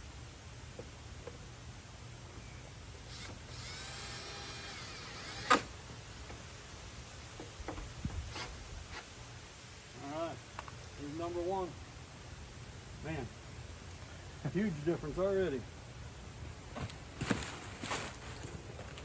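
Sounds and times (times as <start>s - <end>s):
power drill whirring: 3.0s - 5.7s.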